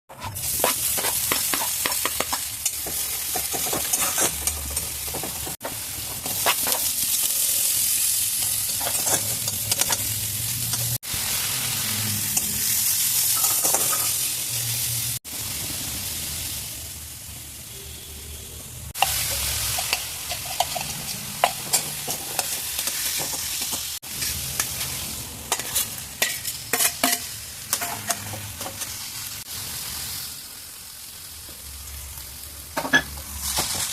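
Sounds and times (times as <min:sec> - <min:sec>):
utensil scraping a pan: 0:00.1 - 0:06.9, 0:08.7 - 0:10.1, 0:24.2 - 0:29.0
food sizzling in hot oil: 0:00.1 - 0:17.9, 0:18.9 - 0:33.9.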